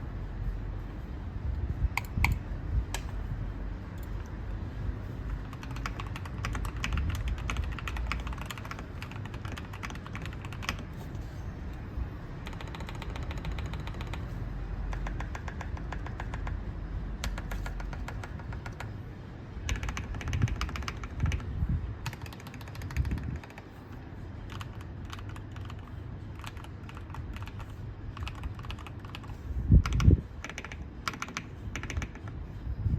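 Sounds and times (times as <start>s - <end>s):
mechanical keyboard typing: 2.0s - 3.2s, 5.3s - 11.1s, 12.4s - 16.6s, 17.2s - 18.9s, 19.7s - 23.8s, 24.5s - 32.4s.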